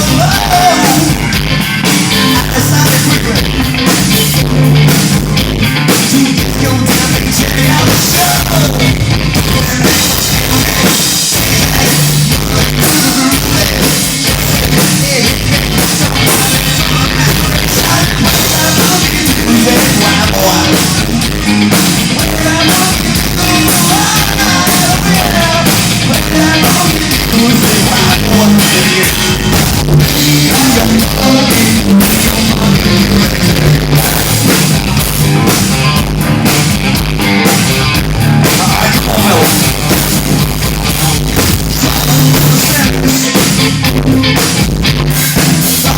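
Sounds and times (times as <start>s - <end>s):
person singing: 0.0s - 4.7s, 5.9s - 21.5s, 22.1s - 34.7s, 38.2s - 39.8s, 41.7s - 43.8s
drum kit: 0.0s - 45.9s
electric guitar: 0.0s - 45.9s
rock band playing: 0.0s - 45.9s.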